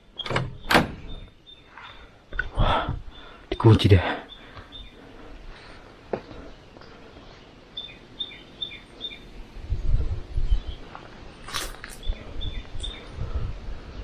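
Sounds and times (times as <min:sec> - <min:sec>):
bird calling: 0:00.0 - 0:09.4.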